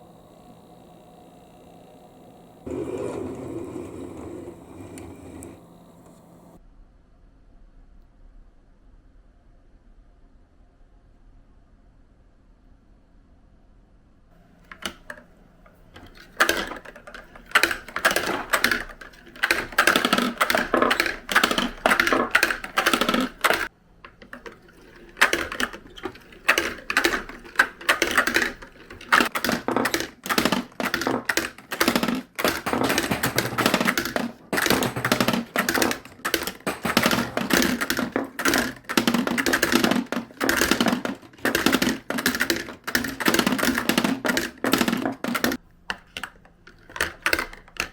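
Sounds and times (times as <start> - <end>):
marbles clacking down plastic run: 16.0 - 45.6.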